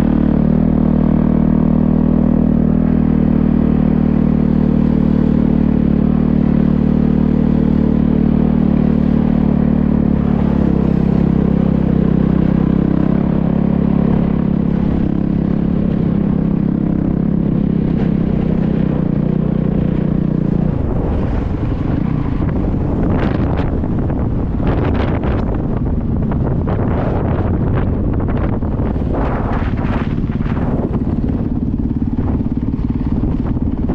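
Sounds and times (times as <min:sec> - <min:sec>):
motorcycle engine running: 0:00.0 - 0:33.9
wind buffeting microphone: 0:08.8 - 0:33.9.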